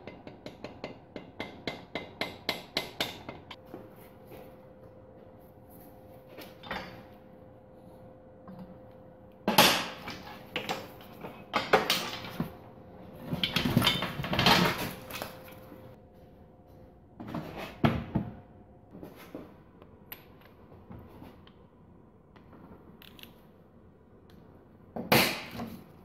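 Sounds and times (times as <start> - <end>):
tools picked up and set down: 6.3 - 7.1.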